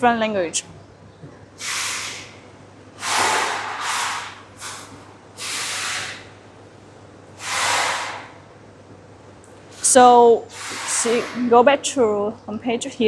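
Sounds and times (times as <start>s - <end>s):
short bursts of airy hiss: 1.6s - 2.4s, 3.0s - 6.4s, 7.4s - 8.4s, 9.7s - 11.5s.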